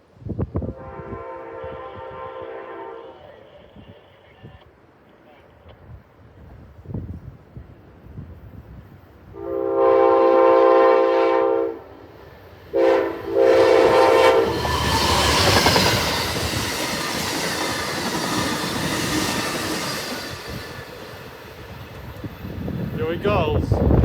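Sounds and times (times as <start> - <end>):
train air horn: 0.6 - 3.5, 9.3 - 16.3
train wheels clacking on rails: 13.0 - 23.0.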